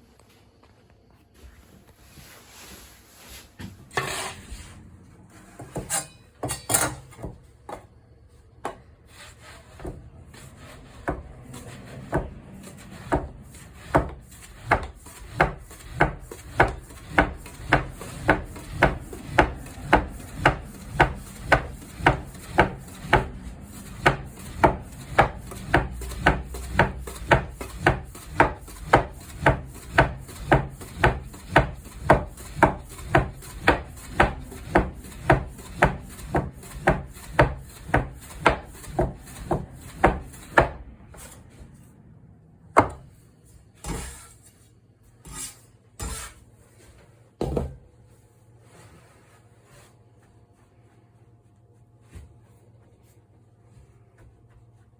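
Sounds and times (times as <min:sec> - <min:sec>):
knife chopping on wooden board: 0:10.8 - 0:41.4, 0:42.8 - 0:43.1.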